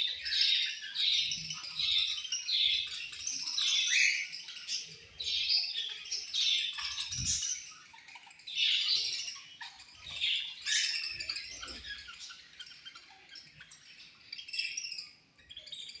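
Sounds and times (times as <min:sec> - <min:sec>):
budgerigars chirping and chattering: 0:00.0 - 0:16.0.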